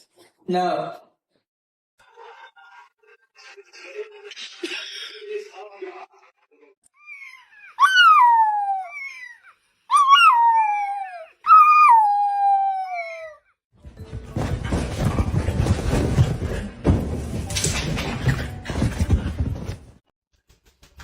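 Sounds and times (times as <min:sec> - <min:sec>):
dog whining: 0:07.7 - 0:13.5
dog howling: 0:07.8 - 0:09.0, 0:09.9 - 0:13.4.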